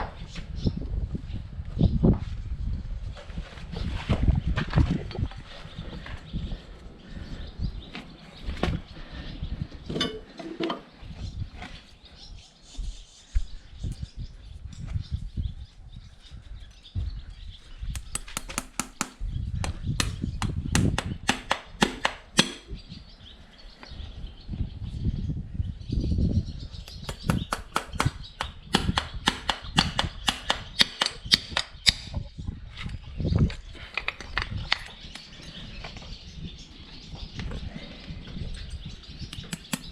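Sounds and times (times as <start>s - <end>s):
hammer striking metal: 21.3s - 22.7s.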